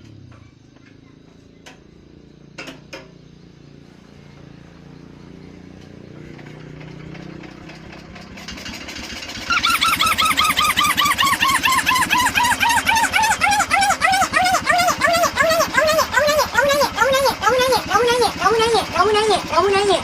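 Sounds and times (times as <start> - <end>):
machine rumbling: 3.2 - 20.0
loud strange squeal: 9.4 - 20.0.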